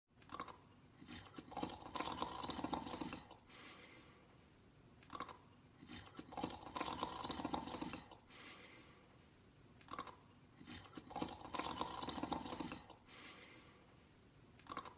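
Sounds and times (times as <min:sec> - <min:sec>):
rattling snore: 0:00.3 - 0:03.4, 0:05.1 - 0:08.2, 0:09.9 - 0:13.0
soft breath: 0:02.8 - 0:04.7, 0:07.8 - 0:09.5, 0:10.6 - 0:14.4.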